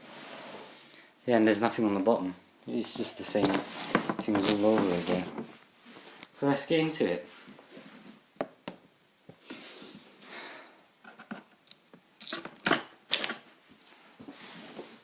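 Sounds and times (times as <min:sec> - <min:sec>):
cardboard rustling and scraping: 0:02.9 - 0:05.6.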